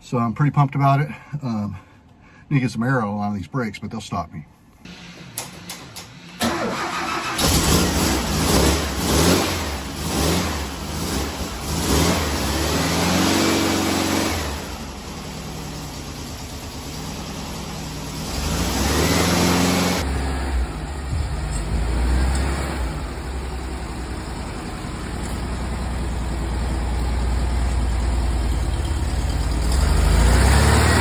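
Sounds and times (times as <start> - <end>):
car engine revving: 6.4 - 25.3, 28.0 - 31.0.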